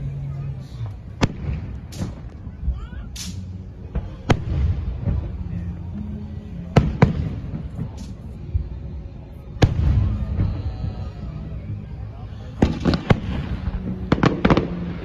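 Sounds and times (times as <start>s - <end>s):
low rumble of firework bursts: 0.0s - 15.0s
fireworks bangs: 1.2s - 5.6s, 12.6s - 15.0s.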